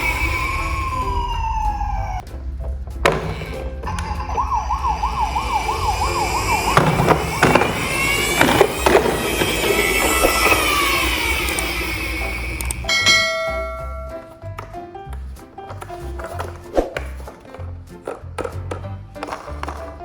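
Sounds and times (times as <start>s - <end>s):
fast warbling siren: 0.0s - 2.2s, 3.9s - 12.7s
wailing siren: 0.0s - 2.2s, 3.9s - 12.9s
sharp knocks: 2.9s - 4.2s, 6.6s - 10.4s.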